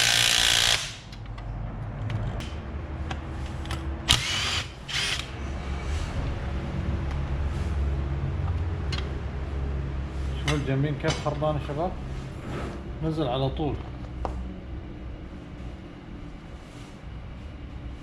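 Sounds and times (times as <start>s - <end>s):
power tool running: 0.0s - 1.1s, 4.1s - 5.4s.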